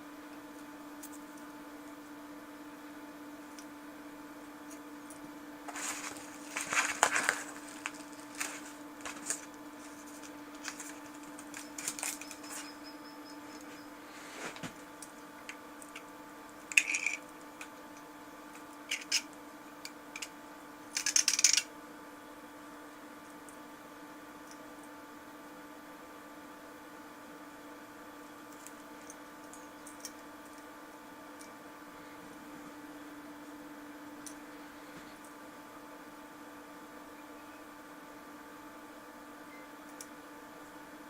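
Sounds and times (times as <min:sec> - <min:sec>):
faint steady hum: 0:00.0 - 0:41.0
small objects clicking and tapping: 0:05.7 - 0:12.8, 0:15.0 - 0:17.7, 0:18.5 - 0:20.3, 0:20.9 - 0:21.7.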